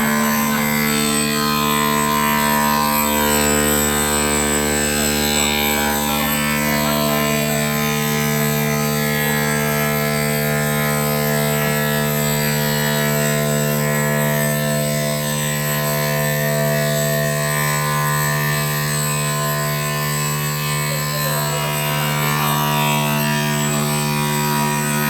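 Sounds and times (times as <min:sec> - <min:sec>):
machine drone: 0:00.0 - 0:25.0.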